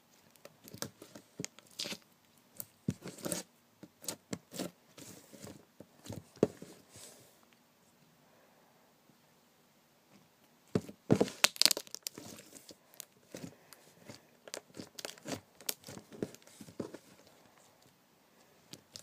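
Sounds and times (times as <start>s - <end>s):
slime squishing with sticky pops: 0.3s - 4.6s, 11.3s - 12.4s, 14.4s - 16.2s.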